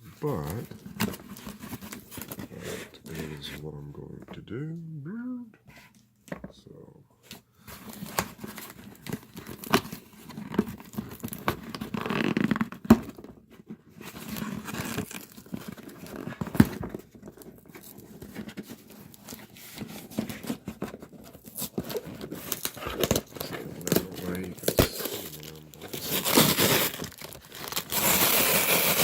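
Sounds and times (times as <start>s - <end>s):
packaging tearing and crinkling: 7.8s - 29.0s.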